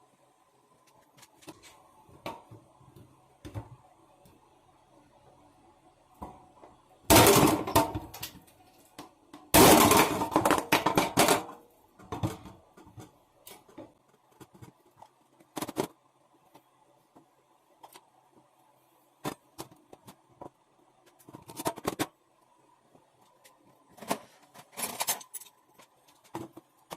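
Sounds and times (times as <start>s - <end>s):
faint steady hum: 0.0s - 26.9s
hard objects knocking and clicking: 23.3s - 26.9s.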